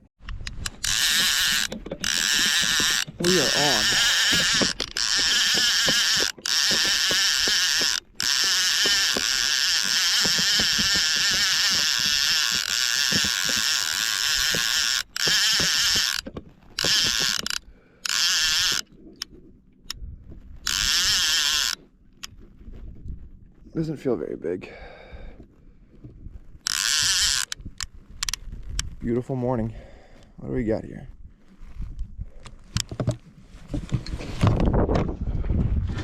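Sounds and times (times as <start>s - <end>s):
fishing reel ratcheting: 0.3s - 19.3s, 20.6s - 22.3s, 26.6s - 28.9s.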